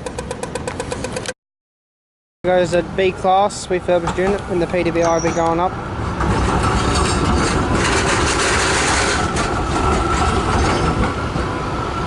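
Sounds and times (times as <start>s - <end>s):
tram wheels rumbling on rails: 2.6s - 12.0s.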